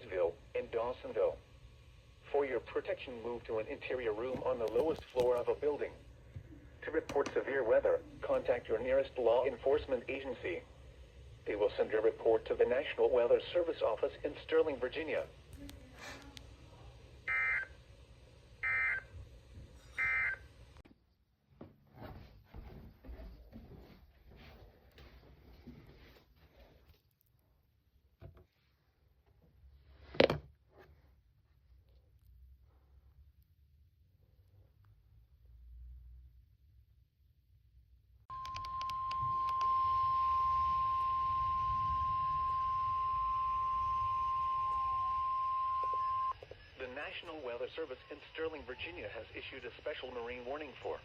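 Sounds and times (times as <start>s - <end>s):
radio speaker clicks: 4.3s - 5.5s, 7.0s - 7.4s
radio data bursts: 17.2s - 17.8s, 18.6s - 19.2s, 19.9s - 20.5s
steady high-pitched alarm tone: 17.2s - 17.8s, 18.6s - 19.2s, 19.8s - 20.5s, 38.3s - 51.0s.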